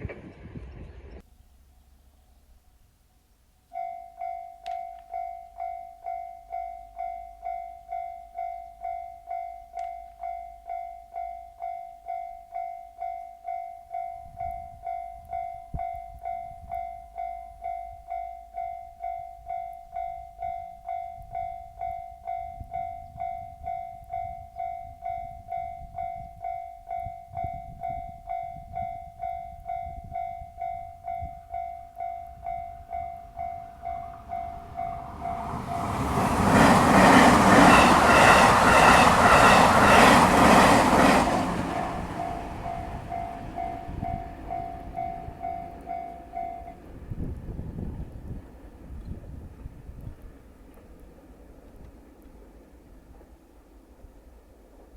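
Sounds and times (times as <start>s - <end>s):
level crossing warning bell: 3.6s - 47.0s
train rumbling past: 13.9s - 54.9s.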